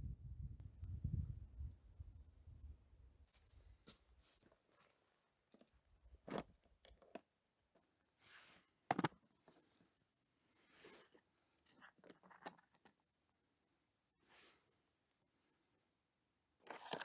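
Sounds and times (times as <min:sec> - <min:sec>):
soft rustles: 0:03.3 - 0:05.4.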